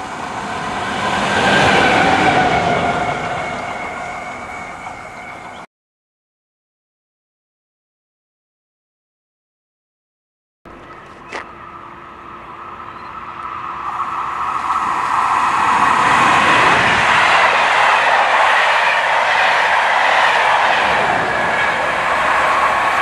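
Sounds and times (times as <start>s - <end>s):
train passing on rails: 0.0s - 5.7s, 10.7s - 23.0s.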